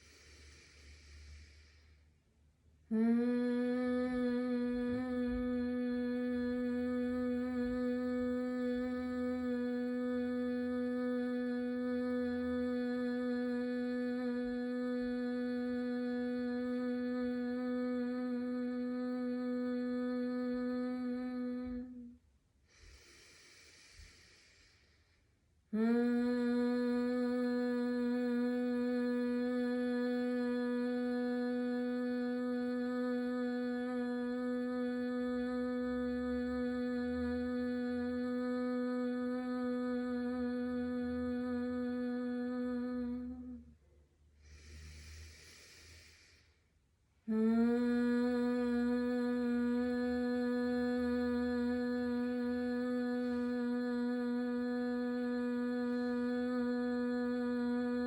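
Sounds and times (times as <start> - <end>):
inhale through the nose: 0.0 - 2.3, 22.6 - 25.3, 44.4 - 46.8
woman humming: 2.9 - 22.1, 25.7 - 43.7, 47.3 - 58.0.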